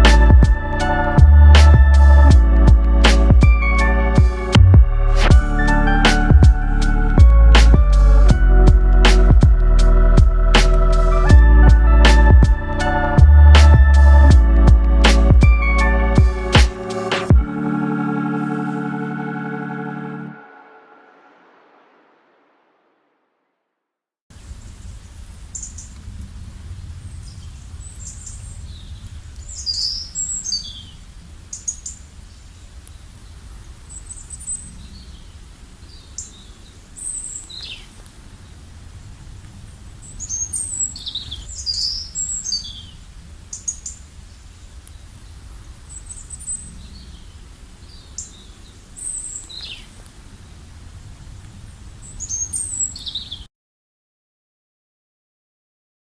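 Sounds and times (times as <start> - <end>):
steady low rumble: 0.0 - 17.6
small birds chirping: 27.1 - 38.7, 40.0 - 50.2, 51.7 - 53.5.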